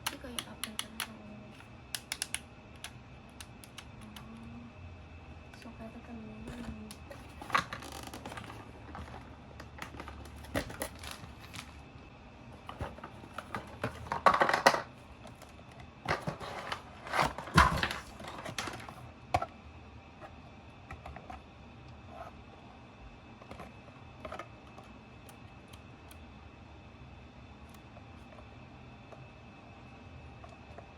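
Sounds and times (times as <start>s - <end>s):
crinkly packaging rustles: 6.5s - 11.8s, 12.6s - 19.0s.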